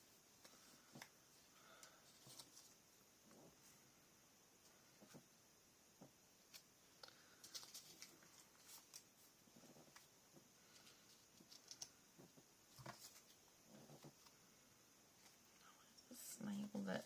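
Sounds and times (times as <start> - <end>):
paper and chipboard rustling: 0.0 - 2.8, 6.4 - 12.0, 12.7 - 14.4
faint steady hiss: 0.0 - 17.0.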